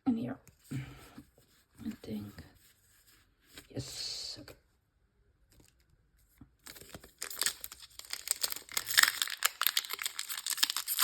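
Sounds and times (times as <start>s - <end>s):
foil wrapper crinkling: 6.6s - 11.0s.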